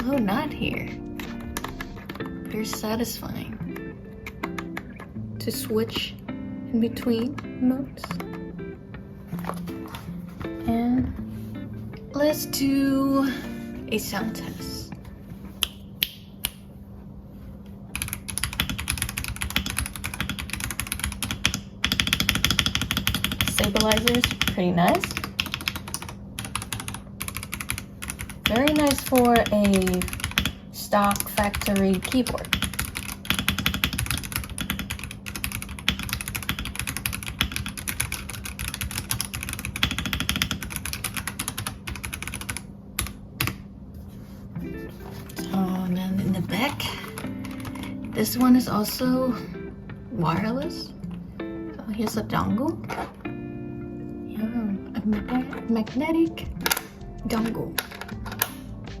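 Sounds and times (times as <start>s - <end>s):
mechanical keyboard typing: 1.2s - 3.0s, 18.0s - 43.6s, 47.0s - 48.3s.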